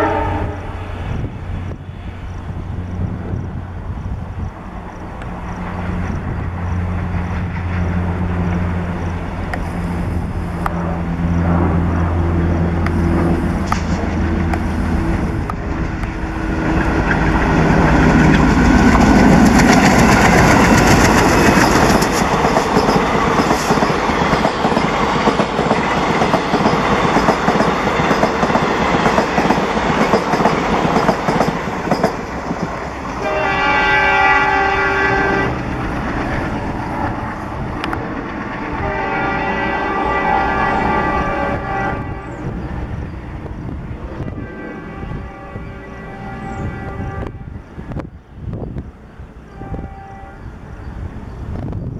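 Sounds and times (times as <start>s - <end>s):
diesel locomotive engine drone: 0.0s - 51.9s
train wheels clattering over rail joints: 15.4s - 32.9s.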